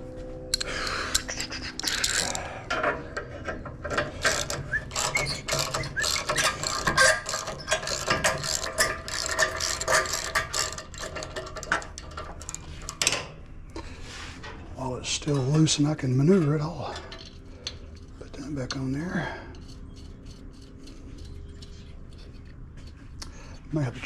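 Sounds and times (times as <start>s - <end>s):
ratchet wrench clicking: 4.1s - 12.8s.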